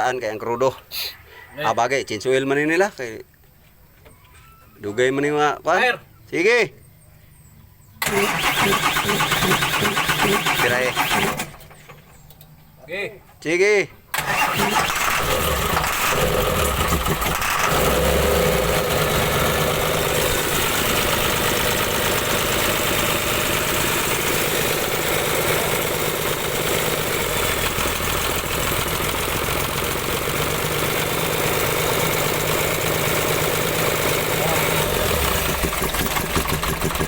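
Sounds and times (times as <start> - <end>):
diesel engine cranking: 8.0 - 12.2, 14.1 - 37.0.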